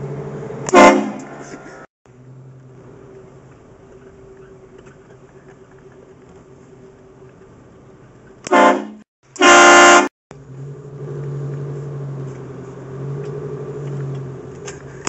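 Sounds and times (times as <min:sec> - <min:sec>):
train horn blasts: 0:00.7 - 0:01.5, 0:08.5 - 0:10.1.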